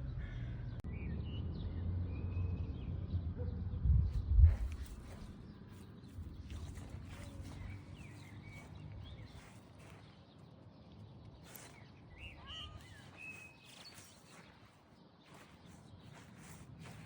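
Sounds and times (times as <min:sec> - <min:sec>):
faint bird chirps: 0:11.4 - 0:17.0.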